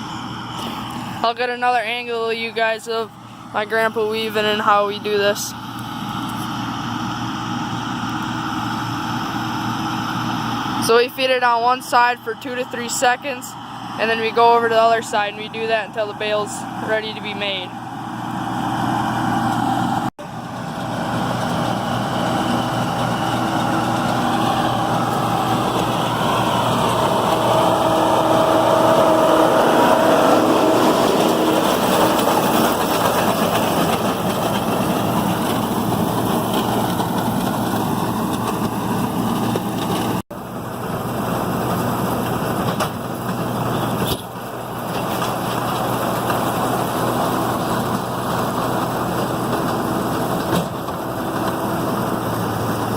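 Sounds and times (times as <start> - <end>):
round baler rolling hay: 0.0 - 52.9
tractor diesel engine under load: 0.0 - 52.9.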